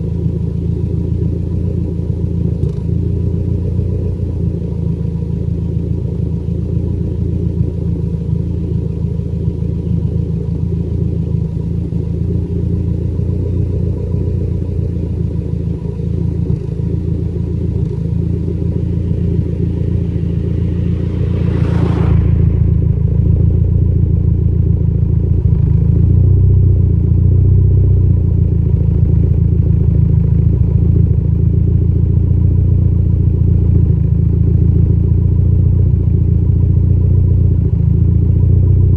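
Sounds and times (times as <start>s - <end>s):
engine idling with misfire: 0.0s - 22.0s, 22.8s - 38.9s
brief whoosh: 19.0s - 24.8s.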